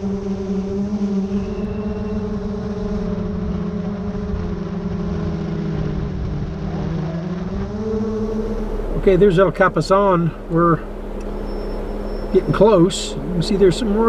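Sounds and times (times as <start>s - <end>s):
car engine droning: 0.0s - 14.0s
low road rumble: 0.0s - 14.0s.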